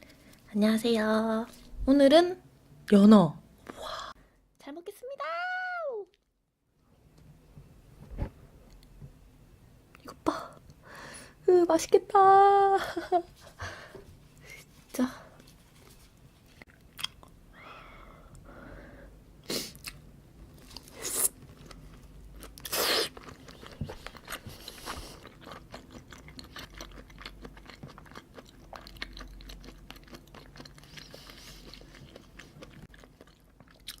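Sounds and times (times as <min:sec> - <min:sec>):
wet chewing mouth sounds: 0:16.7 - 0:17.3, 0:20.7 - 0:34.0.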